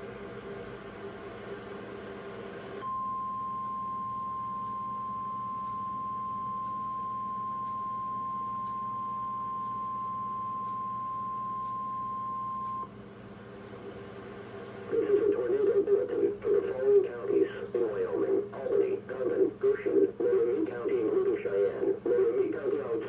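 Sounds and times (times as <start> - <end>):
steady high alarm tone: 2.8 - 12.9.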